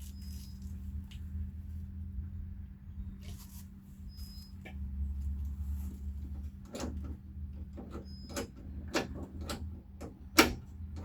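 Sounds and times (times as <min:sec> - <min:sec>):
steady low hum: 0:00.0 - 0:11.0
door latch metallic clicks: 0:07.8 - 0:11.0.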